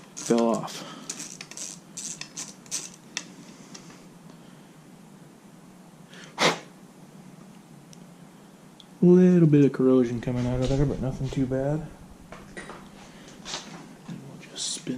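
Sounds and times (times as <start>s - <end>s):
socket ratchet clicking: 1.1s - 3.0s
loud sneeze-like huff: 6.3s - 6.7s.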